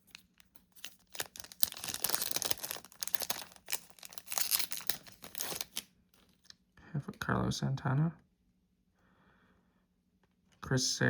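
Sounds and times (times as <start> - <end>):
foil wrapper crinkling: 0.0 - 5.9.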